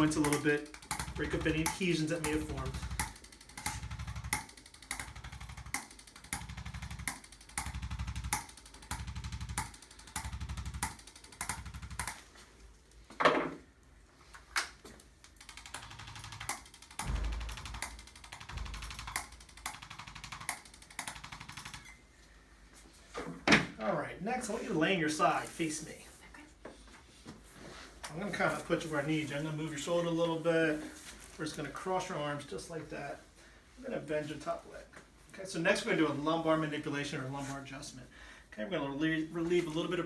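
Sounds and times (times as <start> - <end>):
vibration instrument tapping rapidly: 0.0 - 12.2, 15.5 - 21.8
sharp knock: 17.0 - 19.2.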